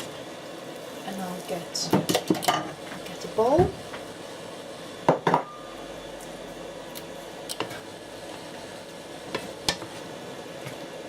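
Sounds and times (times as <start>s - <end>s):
kitchenware knocking and clinking: 5.1s - 5.5s.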